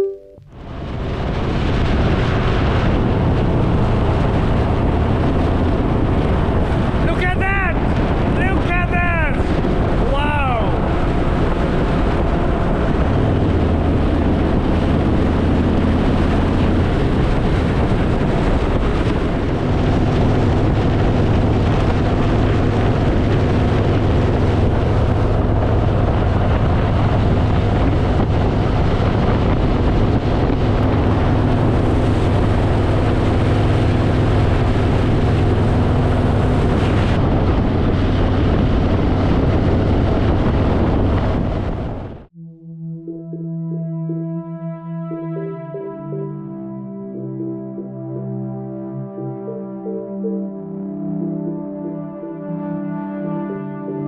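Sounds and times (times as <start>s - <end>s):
wind buffeting microphone: 0.5s - 42.4s
motorcycle engine cruising: 11.0s - 42.2s.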